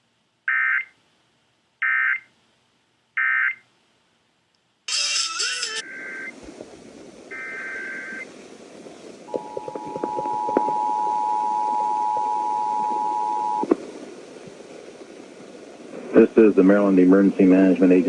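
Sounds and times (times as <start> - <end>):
radio static crackles: 4.9 - 18.0
two-tone attention signal: 5.8 - 6.3, 7.3 - 8.2, 9.3 - 13.6.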